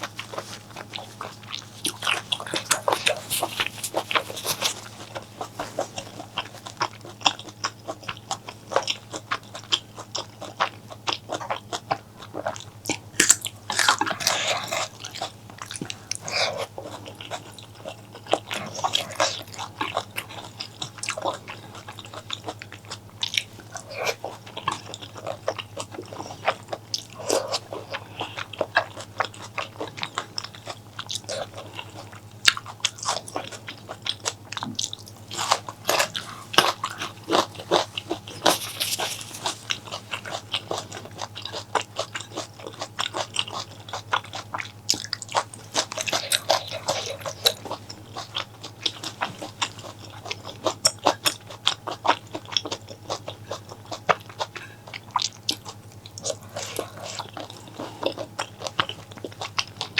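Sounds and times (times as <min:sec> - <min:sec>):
chewing and crunching food: 0:00.0 - 0:59.9.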